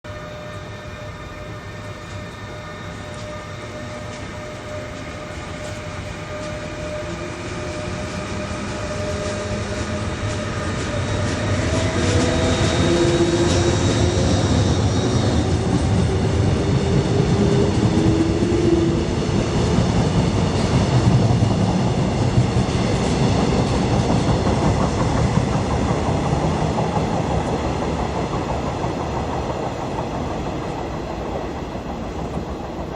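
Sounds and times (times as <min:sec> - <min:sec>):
steady whine: 0:00.1 - 0:32.9
train wheels rumbling and clattering: 0:00.2 - 0:32.9.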